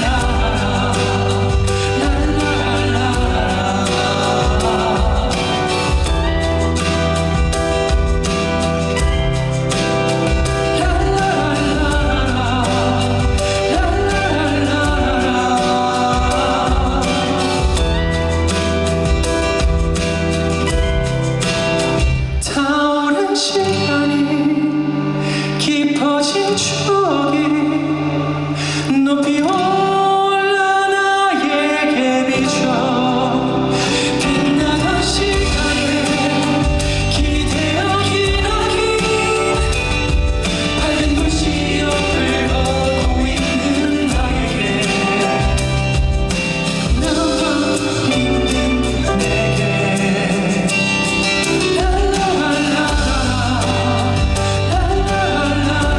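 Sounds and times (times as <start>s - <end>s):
live band playing: 0.0s - 55.9s
man singing: 0.0s - 55.9s.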